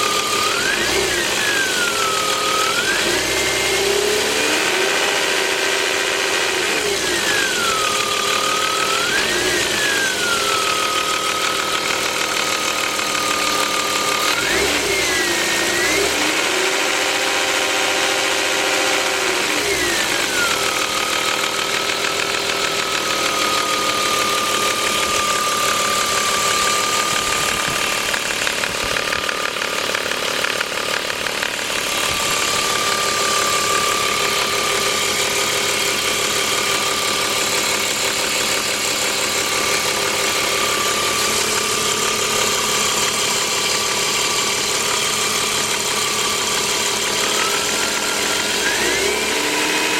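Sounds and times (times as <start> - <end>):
car engine idling and revving: 0.0 - 49.9
alternator high-pitched whine: 23.0 - 49.9.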